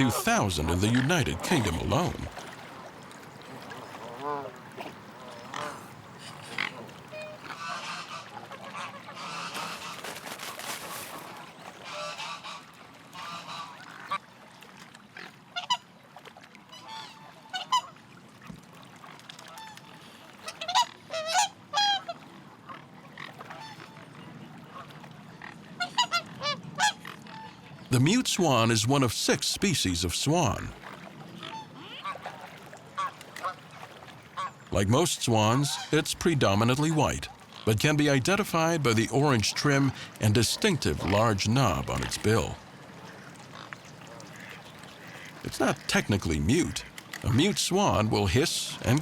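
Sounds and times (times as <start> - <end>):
swans honking: 0.0 - 2.4, 4.0 - 11.1, 25.8 - 30.8, 34.3 - 42.6.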